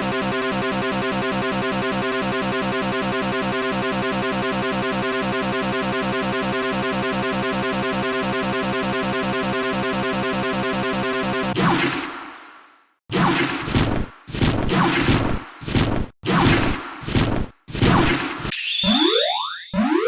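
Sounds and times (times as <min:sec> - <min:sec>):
railroad crossing alarms ringing: 0:00.0 - 0:11.6.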